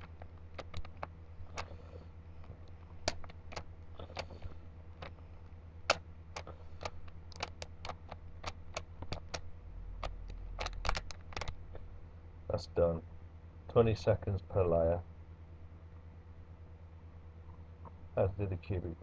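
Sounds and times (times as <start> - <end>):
puzzle cube clicking: 0.0 - 1.7, 3.0 - 5.2, 5.9 - 11.6
steady low hum: 0.0 - 19.0.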